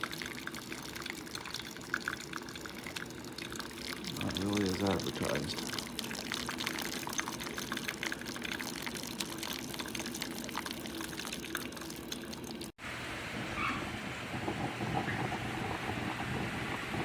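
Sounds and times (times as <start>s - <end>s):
hot water splashing onto grounds: 0.0s - 12.9s.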